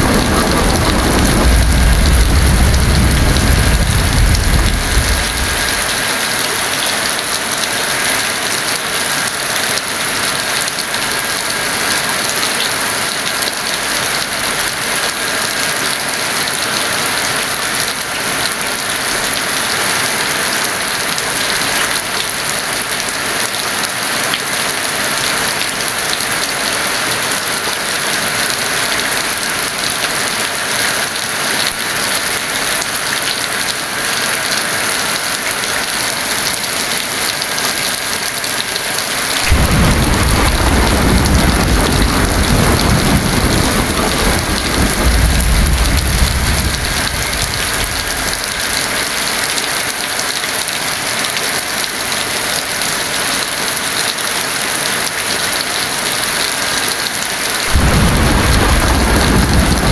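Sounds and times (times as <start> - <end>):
thunder rumbling: 0.0 - 6.1, 39.4 - 49.4, 57.7 - 59.9
heavy rain pouring: 0.0 - 59.9.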